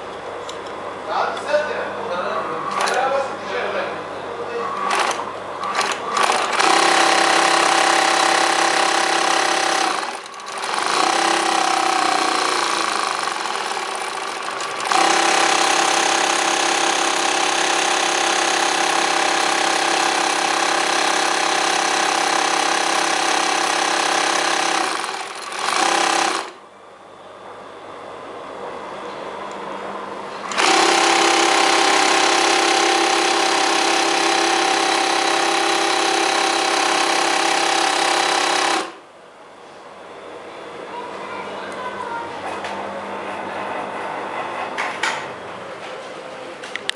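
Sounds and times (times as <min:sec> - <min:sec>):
industrial sewing machine running: 0:02.6 - 0:03.2, 0:04.7 - 0:26.6, 0:30.4 - 0:39.0.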